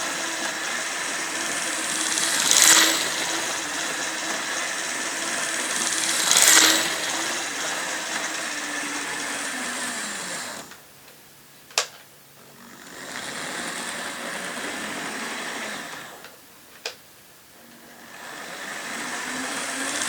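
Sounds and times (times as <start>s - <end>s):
model train motor whirring: 0.0s - 10.8s, 17.6s - 20.0s.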